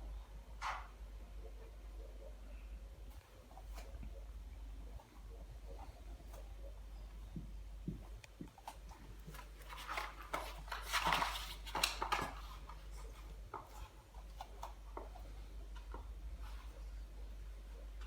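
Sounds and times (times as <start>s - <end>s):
low steady hum: 0.0s - 18.0s
animals scuffling: 3.0s - 17.1s.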